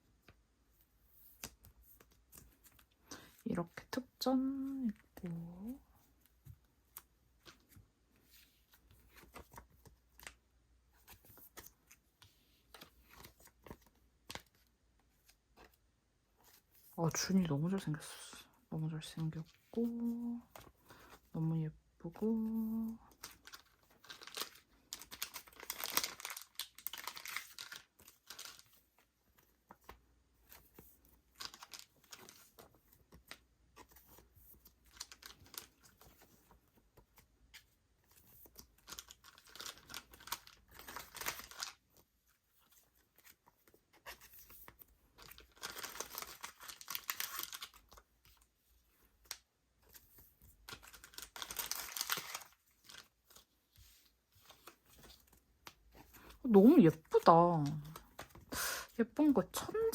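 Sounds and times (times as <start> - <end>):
paper and plastic rustling: 22.2 - 59.9.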